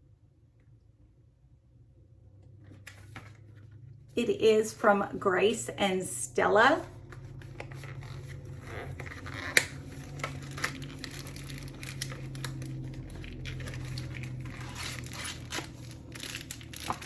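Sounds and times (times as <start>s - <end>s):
low steady hum: 0.0s - 17.0s
packaging crinkling and rustling: 7.0s - 17.0s.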